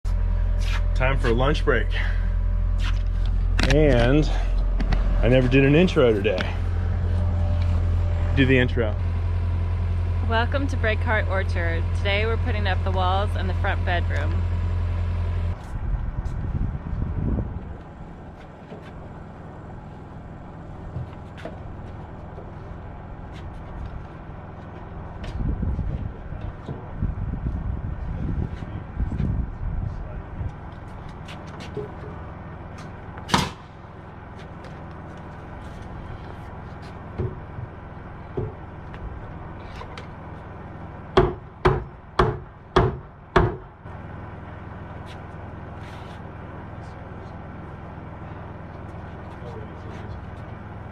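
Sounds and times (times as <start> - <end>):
low motor hum: 0.0 - 50.9
hammer striking wood: 38.3 - 38.6, 41.2 - 43.7.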